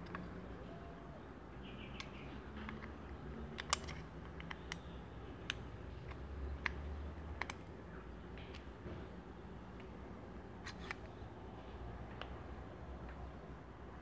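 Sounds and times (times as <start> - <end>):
pistol clicks: 1.9 - 7.7.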